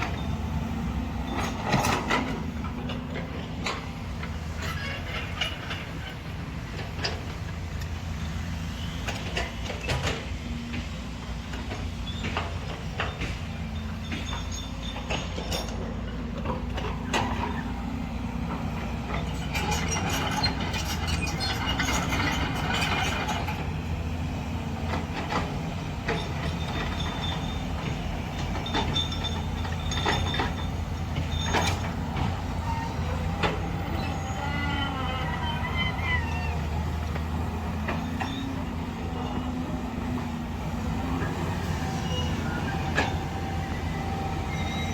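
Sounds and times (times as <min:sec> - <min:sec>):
excavator diesel engine running: 0:00.0 - 0:44.9
metallic clanks and knocks: 0:24.9 - 0:33.7
short squealing tones: 0:26.5 - 0:28.0, 0:28.6 - 0:37.0, 0:37.9 - 0:38.7, 0:41.8 - 0:44.9.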